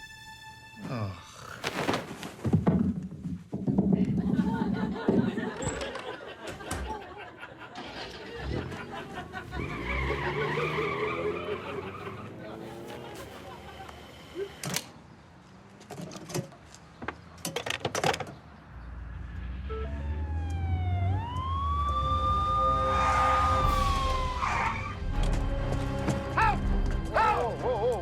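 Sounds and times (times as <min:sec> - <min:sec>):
siren wailing: 0:19.4 - 0:25.3.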